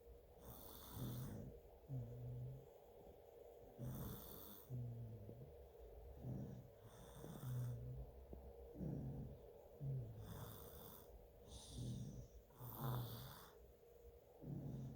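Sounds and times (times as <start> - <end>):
low snores: 0.4 - 2.7, 3.8 - 13.6, 14.4 - 14.9
airy hissing breaths: 8.7 - 13.8.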